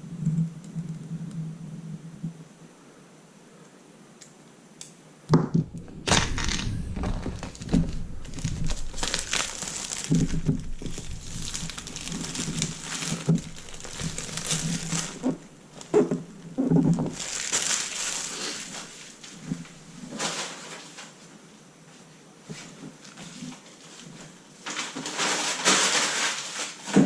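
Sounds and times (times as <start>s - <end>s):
packaging crinkling: 5.6s - 21.2s, 24.6s - 27.0s.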